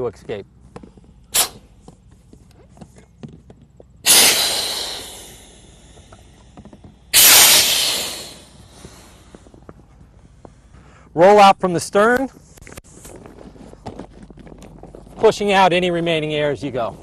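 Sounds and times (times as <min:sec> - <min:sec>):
air hissing out of valve: 0:01.4 - 0:01.7, 0:04.0 - 0:09.4
valve click: 0:07.2 - 0:08.5.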